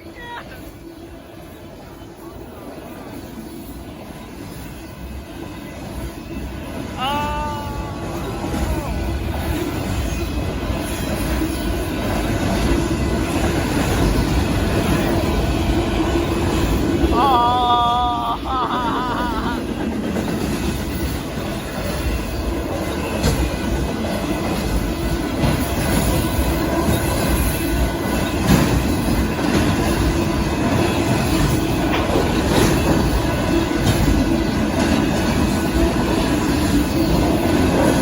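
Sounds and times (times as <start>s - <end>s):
freight train rumbling past: 0.0s - 38.0s
wheels clacking on rail joints: 8.1s - 17.2s, 19.5s - 38.0s.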